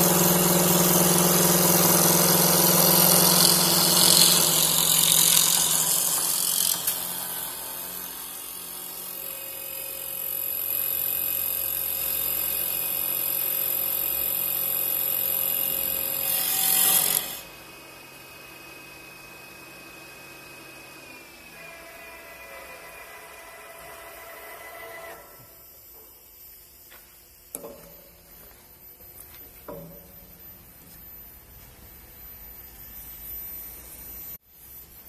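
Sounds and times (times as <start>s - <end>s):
wood lathe cutting: 0.0s - 13.8s, 14.5s - 17.6s
thin high machine whine: 0.0s - 35.0s.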